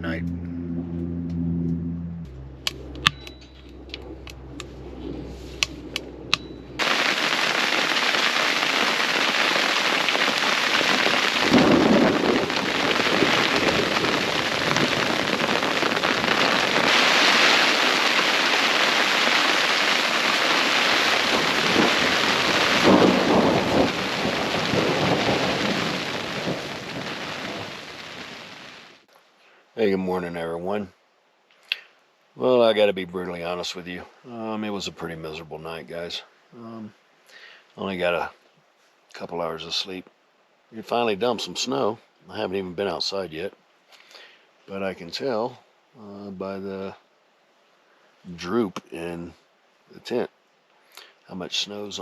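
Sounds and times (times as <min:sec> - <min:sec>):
thunder rumbling: 0:00.0 - 0:29.0
wind: 0:00.0 - 0:52.0
heavy rain on a tent: 0:06.8 - 0:29.1
faint clicks: 0:31.5 - 0:32.0.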